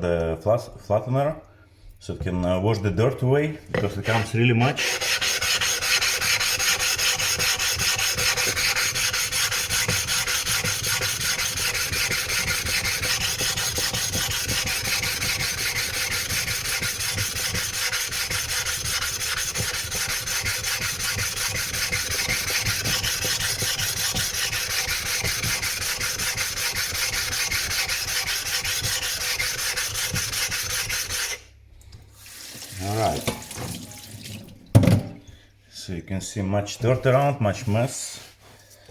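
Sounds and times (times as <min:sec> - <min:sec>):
stone rubbing on water stone: 0:03.8 - 0:31.4.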